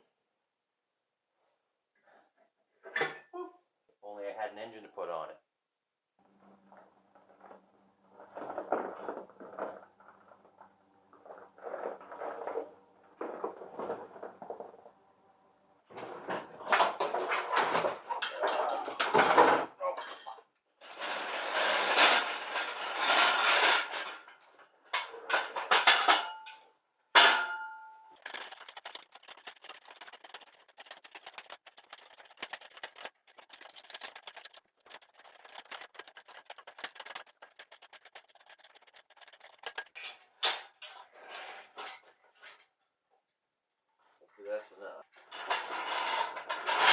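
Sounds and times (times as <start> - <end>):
metal clattering: 25.0 - 30.4
fast ratchet-like clicking: 28.4 - 39.9.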